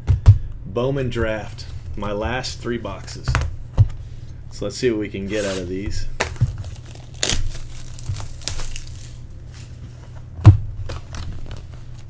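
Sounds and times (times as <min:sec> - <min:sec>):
packaging crinkling and tearing: 0:05.2 - 0:09.8.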